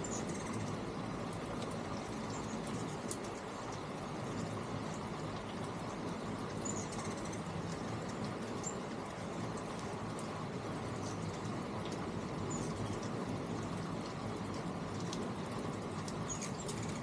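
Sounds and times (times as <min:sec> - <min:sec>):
hummingbird chirps: 0:00.0 - 0:00.8, 0:01.9 - 0:03.2, 0:06.6 - 0:07.5, 0:12.4 - 0:13.1, 0:16.2 - 0:17.0.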